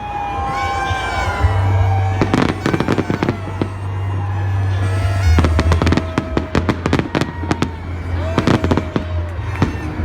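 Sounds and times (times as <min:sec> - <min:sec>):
fireworks bangs and crackles: 0:02.3 - 0:03.2.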